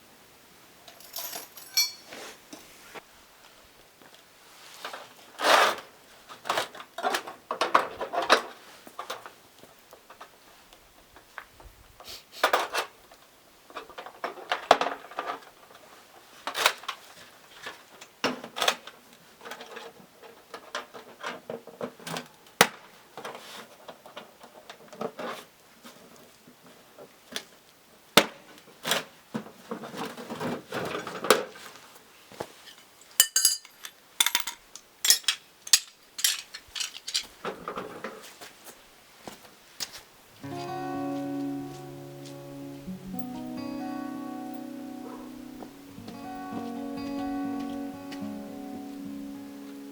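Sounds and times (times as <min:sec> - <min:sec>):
dishes and utensils clinking: 0:01.0 - 0:02.1, 0:32.7 - 0:37.2.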